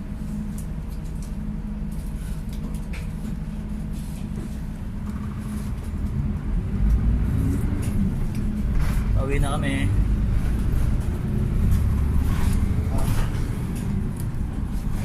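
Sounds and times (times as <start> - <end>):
moving vehicle rumble: 0.0 - 15.0.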